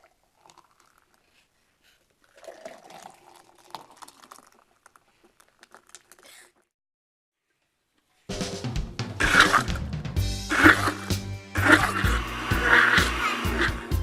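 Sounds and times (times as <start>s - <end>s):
liquid pouring: 0.0s - 1.4s, 2.2s - 6.5s.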